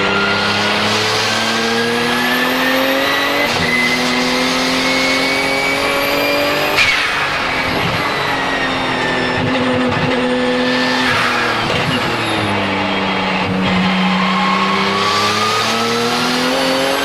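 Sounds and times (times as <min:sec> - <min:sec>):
race car engine accelerating: 0:00.0 - 0:17.0
turbo whistle: 0:01.5 - 0:09.8.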